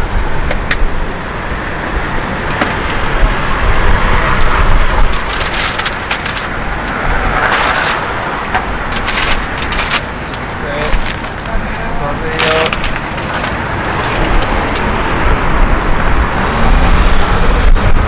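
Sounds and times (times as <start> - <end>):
wind buffeting microphone: 0.0 - 18.0
sharp clicks and rustles: 2.3 - 15.6.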